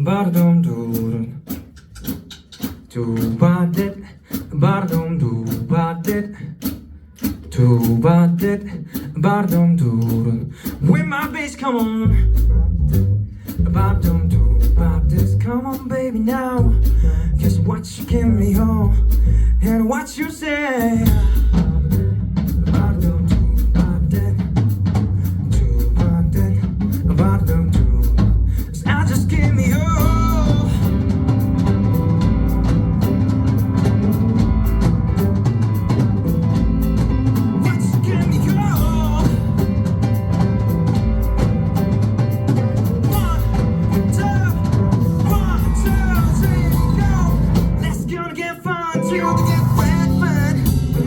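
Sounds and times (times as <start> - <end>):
bass guitar: 0.0 - 51.0
drums beating: 0.0 - 51.0
electric guitar lines: 30.0 - 48.1.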